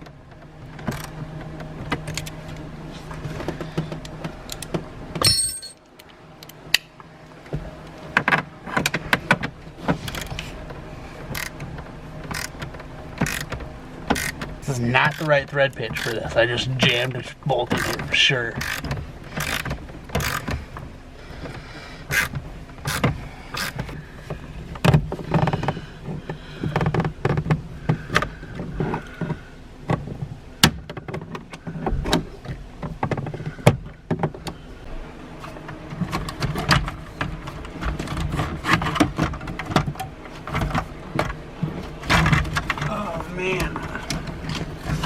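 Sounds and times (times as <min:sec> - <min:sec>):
hand tools clicking on bolt: 0:13.2 - 0:13.5, 0:18.6 - 0:20.5.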